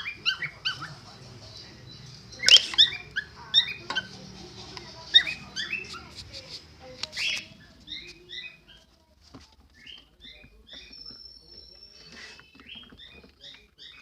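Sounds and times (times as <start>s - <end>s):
bird chirping and chattering: 0.0s - 9.0s, 9.7s - 14.0s.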